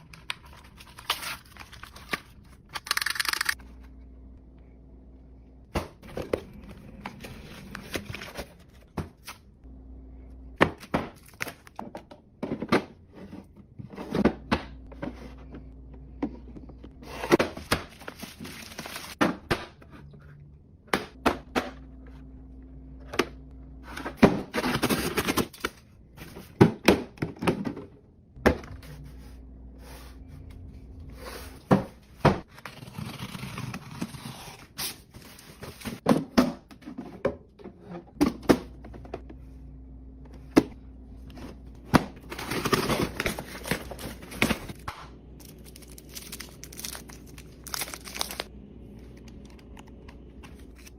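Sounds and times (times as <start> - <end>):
packaging rustling: 45.4 - 48.5.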